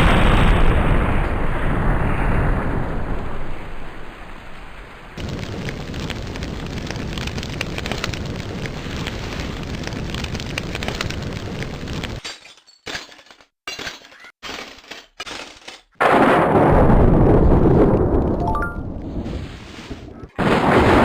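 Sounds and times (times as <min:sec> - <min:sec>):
dense crackling: 0:04.1 - 0:12.2
deep rumbling explosion boom: 0:16.1 - 0:19.3.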